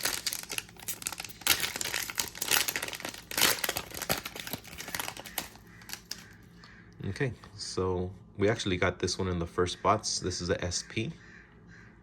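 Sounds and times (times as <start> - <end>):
wrapper tearing and crinkling: 0.0 - 6.4.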